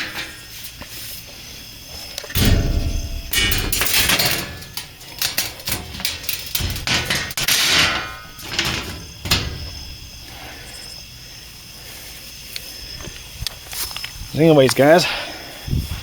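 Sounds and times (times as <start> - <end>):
rustling scraping noise: 0.0 - 10.5
clatter of knocks and clicks: 2.2 - 9.8.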